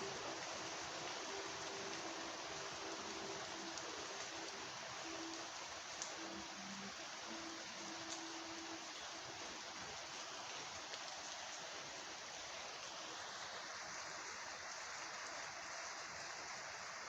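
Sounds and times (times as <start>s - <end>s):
faint rain drop ticks: 0.0s - 12.9s
hiss of rain: 0.0s - 17.0s.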